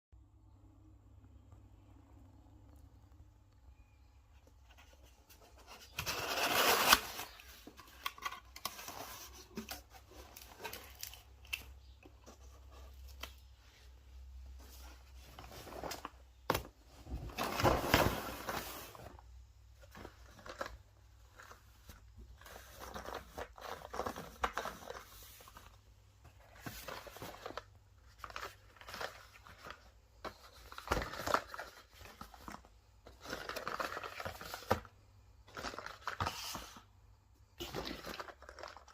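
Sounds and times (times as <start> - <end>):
packaging tearing and crinkling: 5.9 - 8.3.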